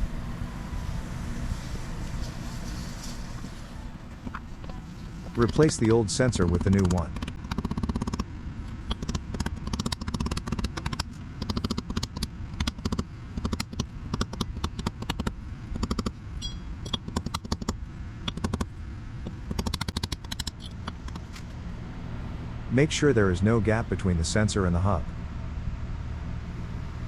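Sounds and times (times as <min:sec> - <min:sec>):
low steady hum: 0:00.0 - 0:27.0
hand tools clicking on metal: 0:06.5 - 0:08.2.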